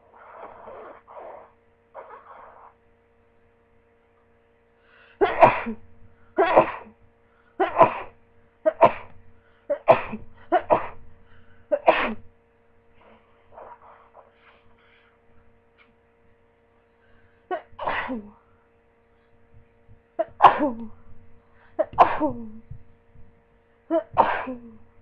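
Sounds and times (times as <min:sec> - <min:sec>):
person sneezing: 0:05.2 - 0:05.8, 0:06.4 - 0:07.0, 0:17.5 - 0:18.4, 0:20.2 - 0:20.9, 0:21.8 - 0:22.6, 0:23.9 - 0:24.8.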